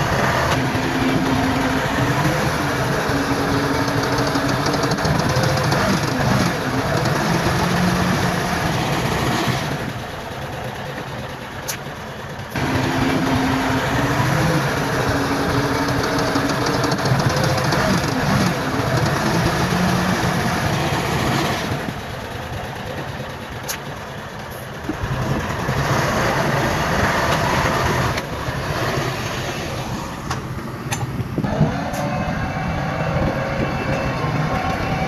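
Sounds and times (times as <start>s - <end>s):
diesel engines running: 0.0s - 35.0s.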